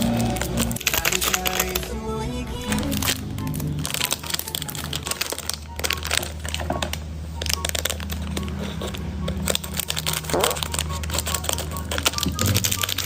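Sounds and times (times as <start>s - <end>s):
background music with bass: 0.0s - 5.1s
plastic packaging crinkling: 0.0s - 13.0s.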